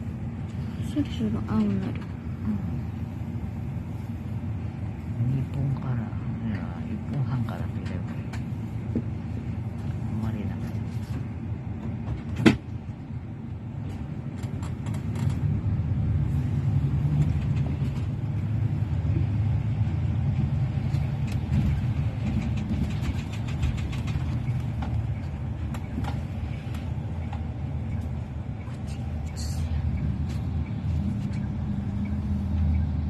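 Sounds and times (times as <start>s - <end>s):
car engine and road rumble: 0.0s - 33.0s.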